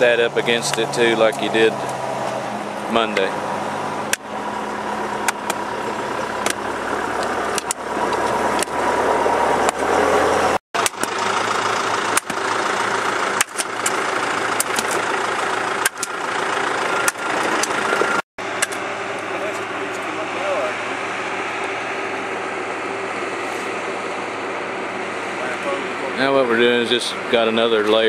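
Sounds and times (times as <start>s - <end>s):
heavy machine engine running: 0.0s - 28.0s
sharp knocks and clicks: 12.1s - 12.4s.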